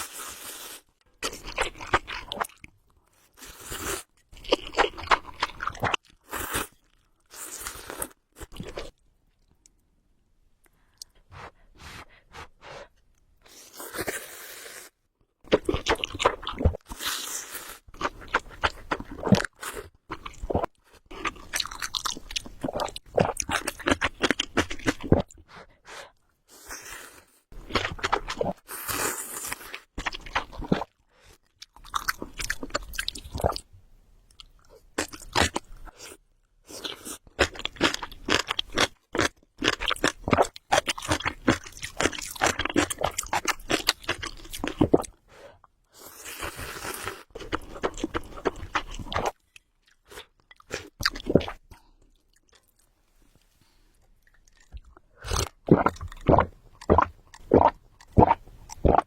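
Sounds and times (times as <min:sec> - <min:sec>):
chewing and crunching: 0:01.2 - 0:02.9, 0:04.1 - 0:07.0, 0:15.5 - 0:17.0, 0:17.8 - 0:25.7, 0:27.6 - 0:28.6, 0:34.4 - 0:45.2, 0:46.0 - 0:59.0.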